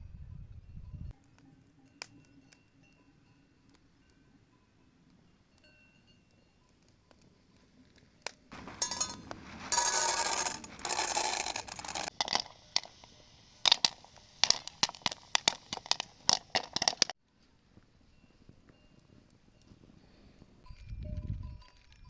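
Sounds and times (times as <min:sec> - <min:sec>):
popcorn rattling in metal pot: 0:08.6 - 0:17.1.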